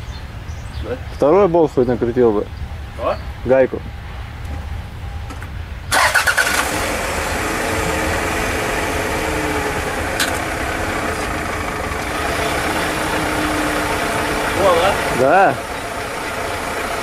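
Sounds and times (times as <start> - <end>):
car engine starting and running: 5.3 - 17.0.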